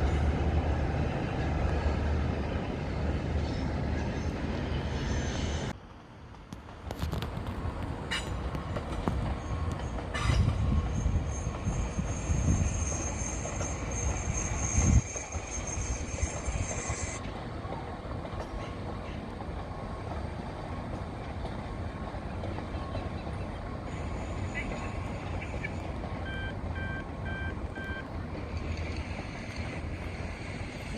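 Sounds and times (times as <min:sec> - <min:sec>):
train clanks: 0:00.0 - 0:05.7, 0:06.3 - 0:30.9
wheels squealing on rails: 0:00.0 - 0:05.8, 0:08.0 - 0:19.5, 0:22.2 - 0:30.9
train running noise: 0:00.0 - 0:30.9.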